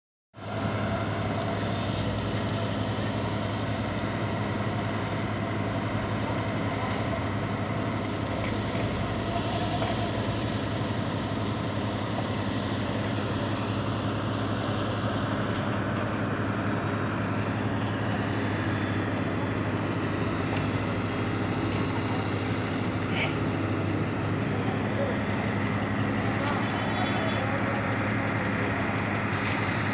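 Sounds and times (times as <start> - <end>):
heavy machinery engine running: 0.4 - 29.9.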